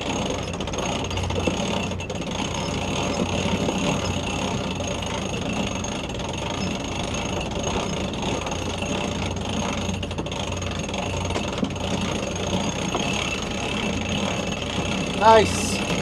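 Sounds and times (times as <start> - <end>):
winch working: 0.2 - 16.0
diesel engine running: 5.4 - 16.0.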